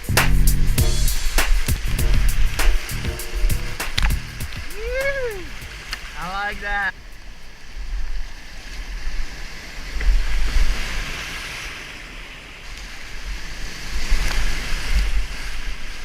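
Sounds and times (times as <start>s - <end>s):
whitewater river rushing: 1.1s - 7.0s.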